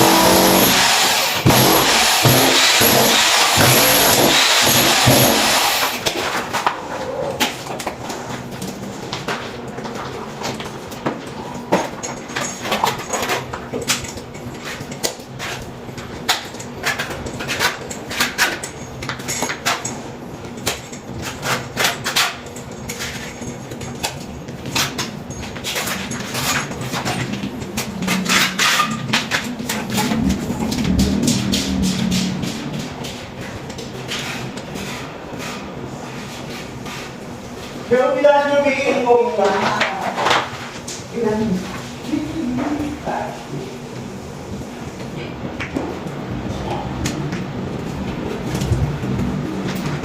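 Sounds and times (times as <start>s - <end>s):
steady low hum: 22.5s - 38.0s
low rumble: 29.4s - 34.1s.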